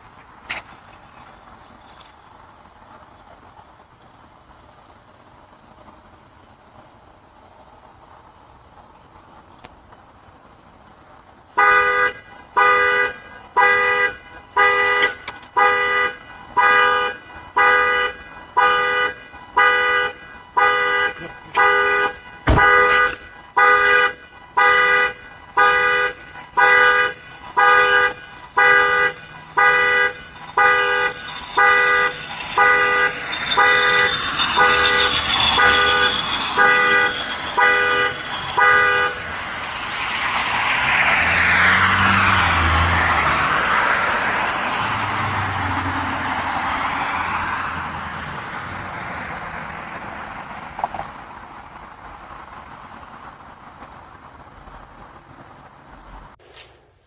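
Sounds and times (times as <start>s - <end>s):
car alarm horn honking: 11.6s - 40.0s
rush of noise: 27.2s - 50.9s.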